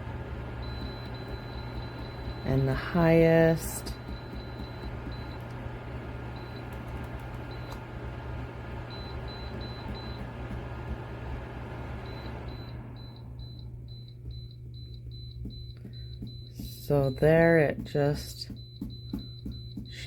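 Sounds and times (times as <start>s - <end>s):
heater fan whoosh: 0.0s - 13.4s.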